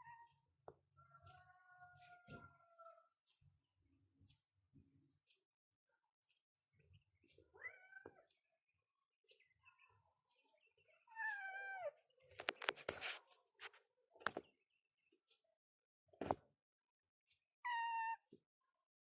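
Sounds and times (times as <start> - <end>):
cat meowing: 7.6 - 8.3, 11.1 - 12.0, 17.7 - 18.2.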